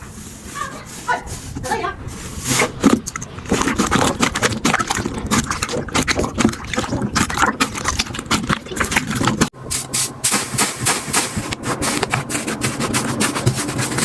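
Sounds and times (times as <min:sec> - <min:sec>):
slime squishing with wet crackles: 0:02.5 - 0:09.5.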